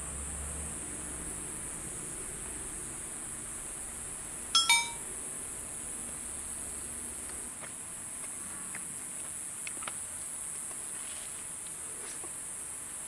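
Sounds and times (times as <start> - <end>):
metallic clinks: 4.6 - 5.0.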